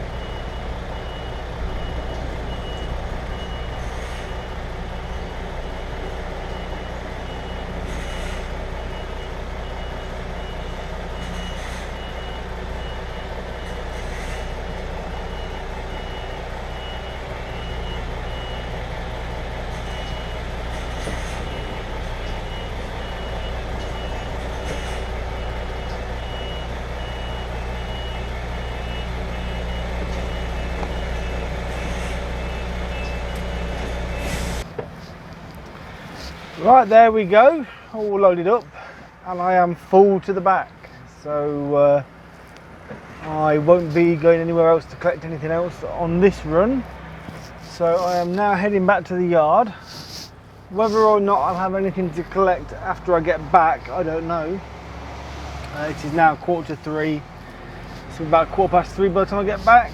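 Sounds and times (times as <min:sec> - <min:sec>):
reversing alarm beeping: 0:00.0 - 0:34.7
low engine hum: 0:00.0 - 0:59.9.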